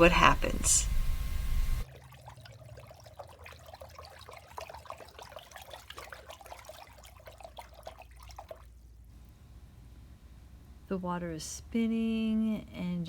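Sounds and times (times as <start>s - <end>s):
water sloshing in bowl: 0.0s - 8.8s.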